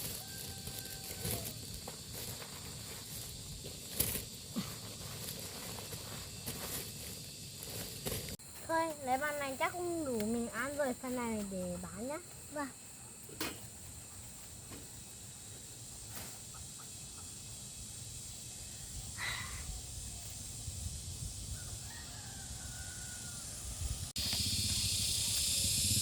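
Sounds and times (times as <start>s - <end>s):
steady background hiss: 0.0s - 26.0s
rooster crowing faintly: 21.6s - 23.7s.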